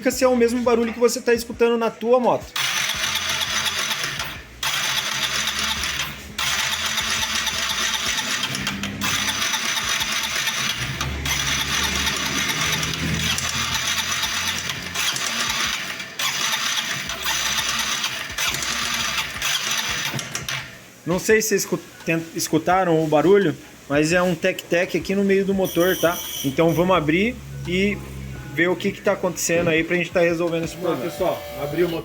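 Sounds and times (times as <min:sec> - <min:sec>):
engine cranking on starter: 0:02.6 - 0:20.7.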